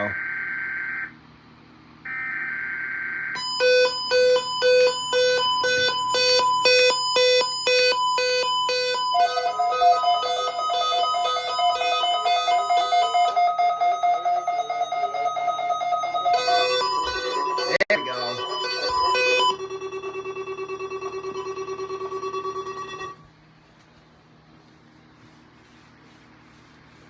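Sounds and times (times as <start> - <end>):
fast pulsing alert beeps: 3.4 - 23.2
screeching data tone: 3.4 - 23.2
warbling alert tone: 3.4 - 23.2.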